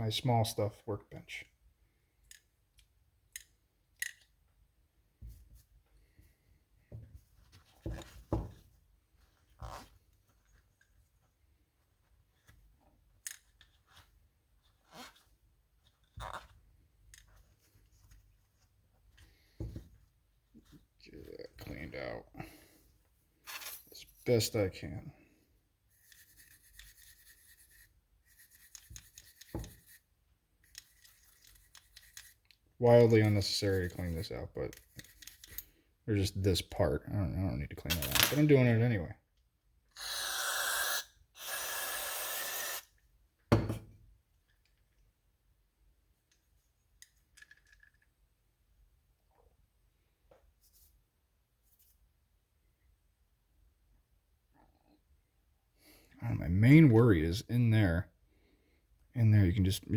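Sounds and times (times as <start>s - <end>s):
faint clicks of tools: 2.2s - 4.3s.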